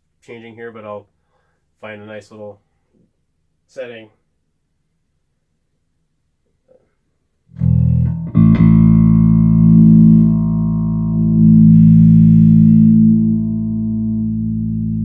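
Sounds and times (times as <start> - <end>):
electric bass guitar notes: 7.5 - 15.0.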